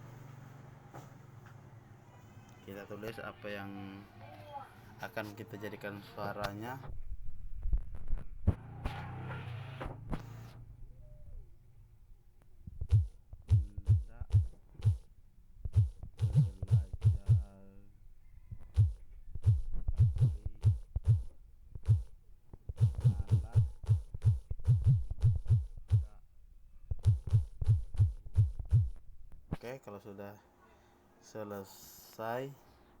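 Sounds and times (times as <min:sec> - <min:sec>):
fingertips tapping touchscreen: 0:12.7 - 0:15.0, 0:15.6 - 0:17.5, 0:18.5 - 0:26.2, 0:26.9 - 0:29.6.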